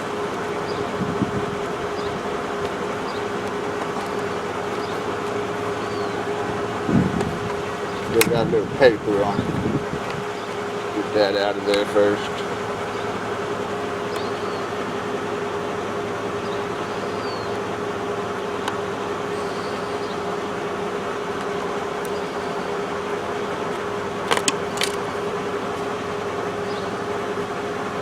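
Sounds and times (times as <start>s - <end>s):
steady machine hum: 0.0s - 28.0s
sharp clicks: 14.1s - 14.5s.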